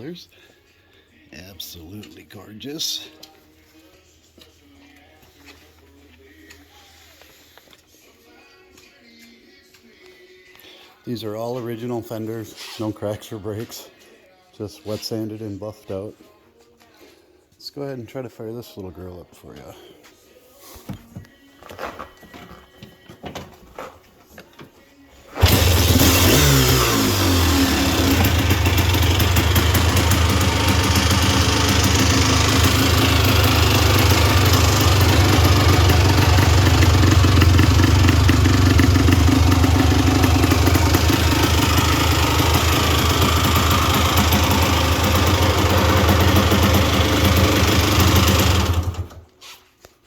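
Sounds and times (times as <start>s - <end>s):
two-stroke engine starting and revving: 25.3s - 49.2s.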